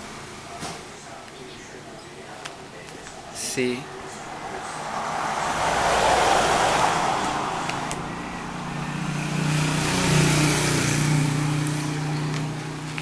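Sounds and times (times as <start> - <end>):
engine humming: 0.0 - 13.0
vehicle passing by: 3.2 - 13.0.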